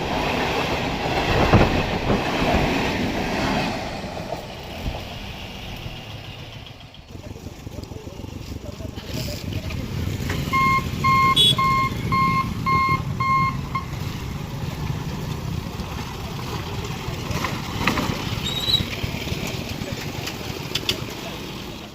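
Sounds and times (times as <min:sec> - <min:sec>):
passing train rumble: 0:00.0 - 0:21.9
short electronic beeps: 0:10.5 - 0:14.0.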